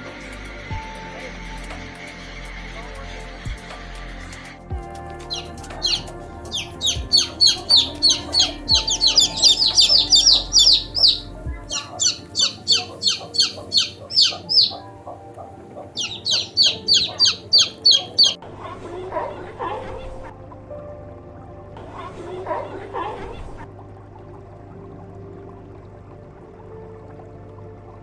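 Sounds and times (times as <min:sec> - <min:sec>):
background music: 0:00.0 - 0:28.0
bird calling high-pitched: 0:05.3 - 0:14.9, 0:16.0 - 0:18.4.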